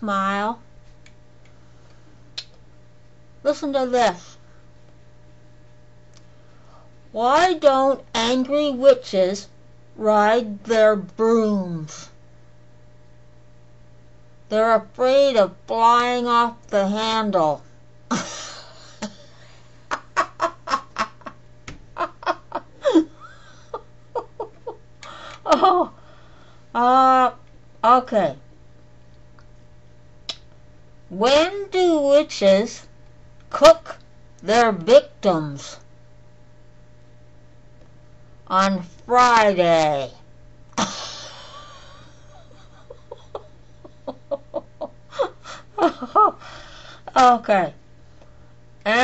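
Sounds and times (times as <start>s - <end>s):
person laughing: 18.1s - 26.0s, 40.8s - 46.6s.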